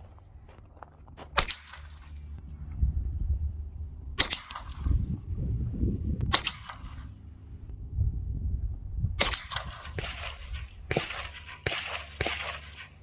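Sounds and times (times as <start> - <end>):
low rumble: 0.0 - 13.0
rifle shots with echo: 1.4 - 2.2, 4.2 - 4.9, 6.3 - 7.1, 9.2 - 13.0.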